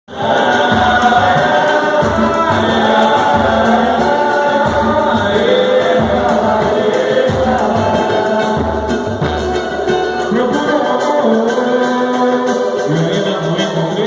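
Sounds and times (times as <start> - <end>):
pulsing bass: 0.1 - 10.8
group singing: 0.1 - 14.0
light percussion: 0.1 - 14.0.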